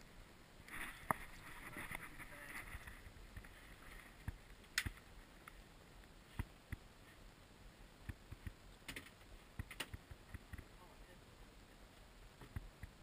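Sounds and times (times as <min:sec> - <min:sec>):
sharp clicks and taps: 0:08.0 - 0:10.7.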